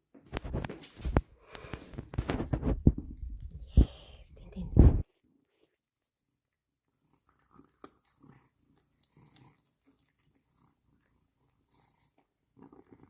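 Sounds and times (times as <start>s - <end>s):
cat chewing food: 5.6s - 13.0s.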